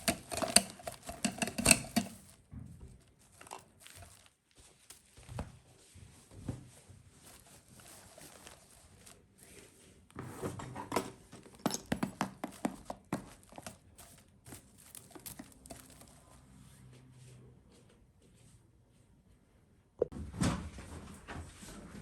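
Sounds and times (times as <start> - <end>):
rustling: 0.0 - 17.5.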